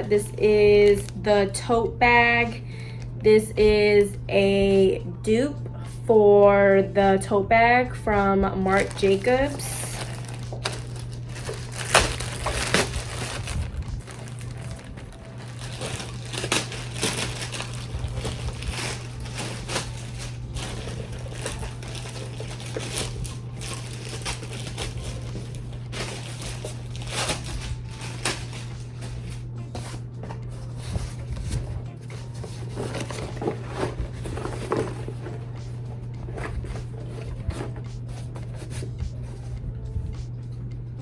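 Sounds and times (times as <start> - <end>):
steady low hum: 0.0 - 41.0
plastic packaging crinkling: 8.7 - 38.9.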